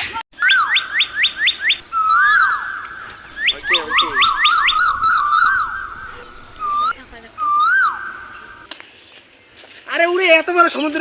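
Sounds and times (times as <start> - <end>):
high rising chirps: 0.4 - 8.7
low wavering warble: 0.4 - 8.7.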